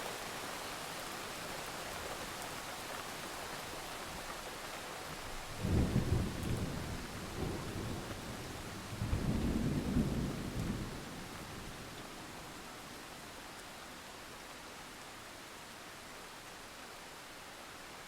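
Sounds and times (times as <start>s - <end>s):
steady rain: 0.0s - 18.0s
thunder rumbling: 5.6s - 11.3s.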